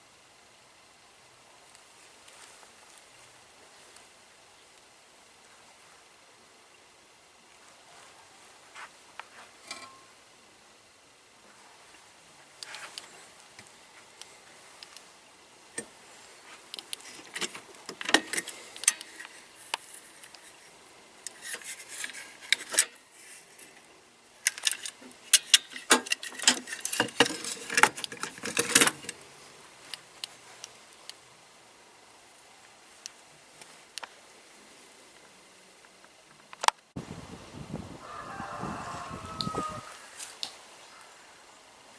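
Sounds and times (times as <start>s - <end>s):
metal parts and tools clinking: 9.7s - 10.0s, 24.4s - 29.2s.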